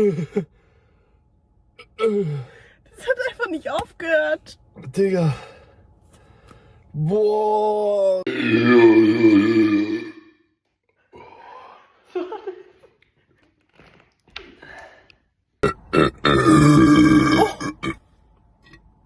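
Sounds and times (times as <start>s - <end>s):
person burping loudly: 8.3s - 10.4s, 15.6s - 18.0s.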